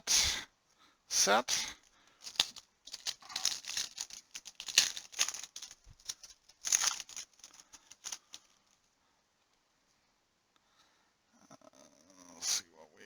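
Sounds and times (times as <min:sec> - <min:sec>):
cellophane wrapper crinkling: 0:02.2 - 0:08.8.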